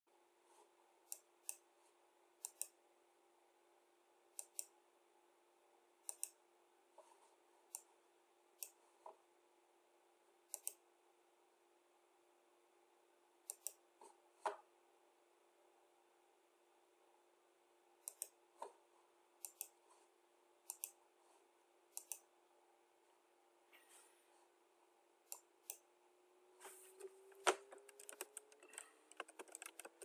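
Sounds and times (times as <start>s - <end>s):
faint steady hum: 0.1s - 30.0s
sharp clicks: 27.8s - 30.0s.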